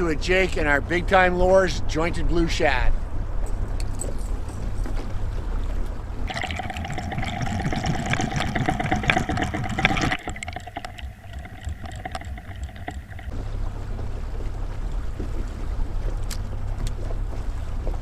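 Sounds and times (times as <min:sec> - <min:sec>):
water rushing around a boat: 0:04.9 - 0:18.0.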